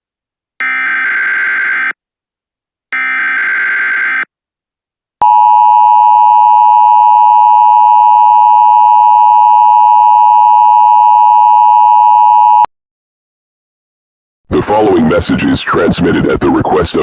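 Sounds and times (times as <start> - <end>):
two-tone alarm tone: 0.6 - 2.0, 2.9 - 4.3, 5.2 - 12.7.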